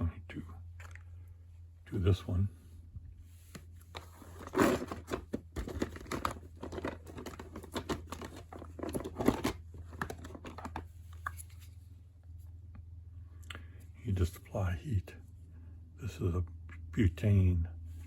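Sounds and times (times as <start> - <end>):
steady low hum: 0.0 - 18.0
plastic tubing rustling and clicking: 3.5 - 11.7.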